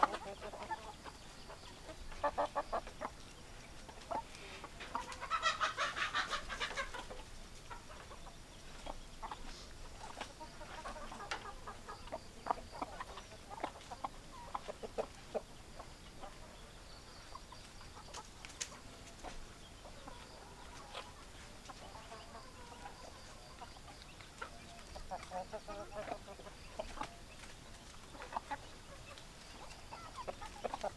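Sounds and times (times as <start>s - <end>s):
hens clucking: 0.0s - 30.9s.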